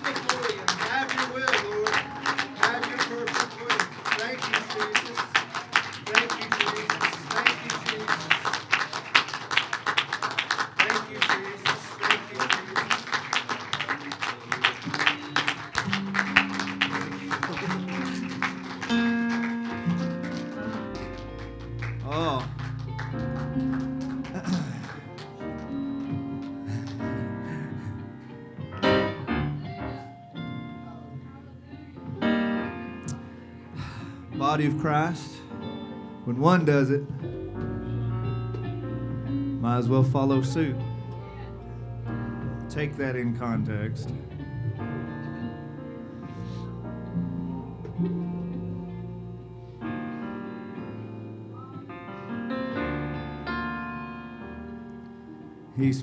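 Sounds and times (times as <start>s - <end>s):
keyboard playing sustained chords: 13.4s - 56.0s.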